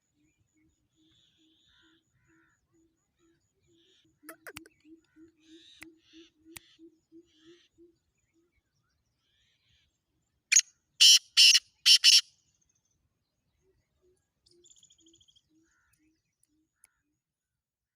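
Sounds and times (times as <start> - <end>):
francolin harsh grating call: 10.5 - 12.2.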